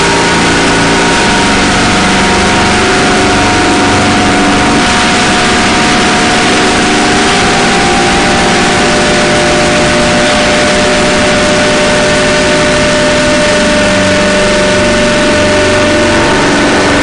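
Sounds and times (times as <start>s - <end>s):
distorted noise drone music: 0.0s - 17.0s
wavering low drone: 0.0s - 17.0s.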